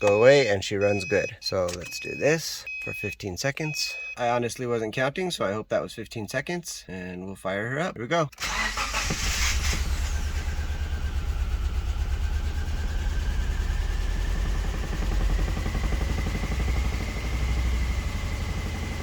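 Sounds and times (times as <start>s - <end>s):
car engine idling roughly: 8.4s - 19.0s.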